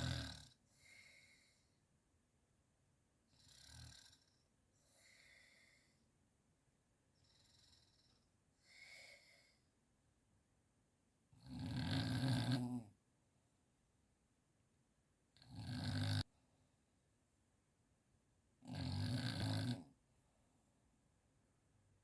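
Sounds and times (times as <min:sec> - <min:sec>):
person snoring: 0:00.0 - 0:01.6, 0:11.4 - 0:12.8, 0:15.4 - 0:16.3, 0:18.7 - 0:19.9.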